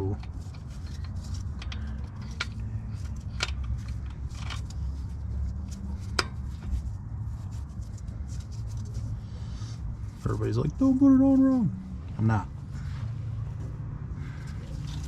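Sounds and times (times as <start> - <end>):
metallic clicks of engine parts: 0.0 - 6.8
steady low hum: 0.0 - 15.0.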